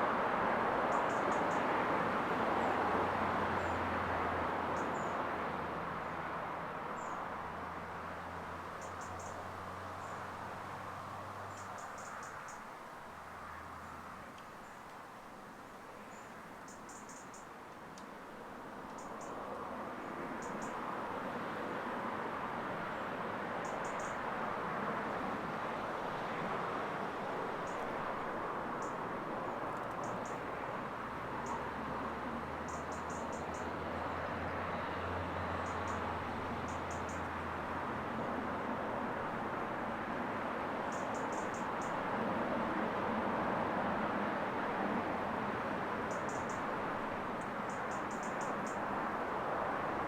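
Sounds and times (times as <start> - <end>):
cars driving past: 0.0 - 14.4, 18.9 - 50.0
small bird chirping: 32.7 - 33.7.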